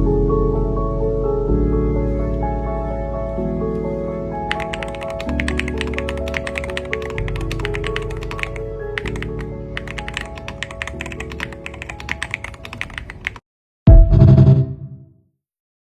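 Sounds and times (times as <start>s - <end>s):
background music: 0.0s - 13.2s
rapid keyboard typing: 4.5s - 13.4s
loud low-toned burst: 13.9s - 15.0s.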